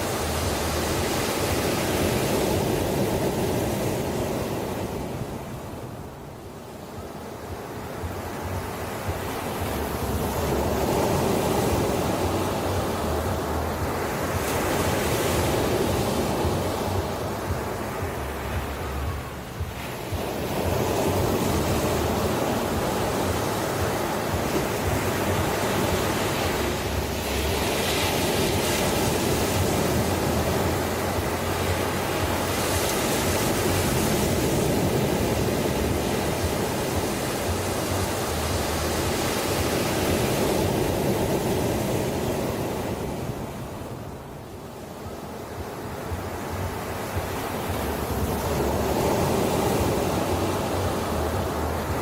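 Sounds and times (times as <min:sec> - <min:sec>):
ocean surf breaking: 0:00.0 - 0:52.0.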